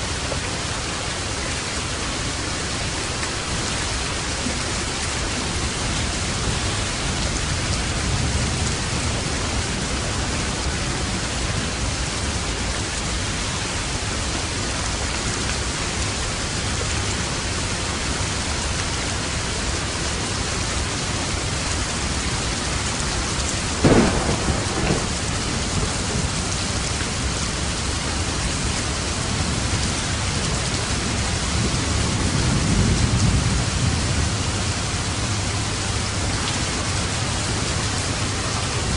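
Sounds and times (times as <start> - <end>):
steady rain: 0.0 - 38.9
low thunder rumble: 23.6 - 38.9
sharp thunder crack: 23.8 - 26.5.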